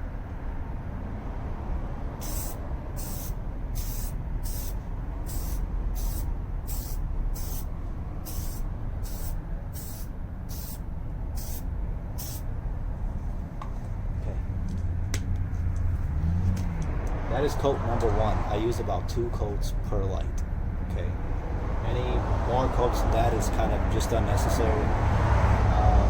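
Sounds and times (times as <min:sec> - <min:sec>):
aerosol can spraying: 0:02.2 - 0:07.7, 0:08.3 - 0:10.8, 0:11.4 - 0:12.4.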